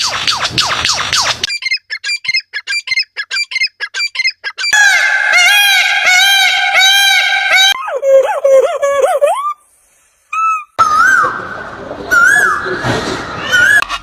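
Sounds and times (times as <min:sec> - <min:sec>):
low bird warbling: 0:01.6 - 0:09.6.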